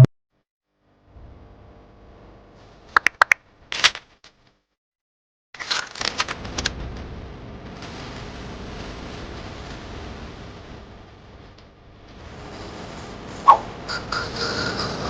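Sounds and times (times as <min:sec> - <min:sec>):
sharp clicks: 0:03.0 - 0:04.0.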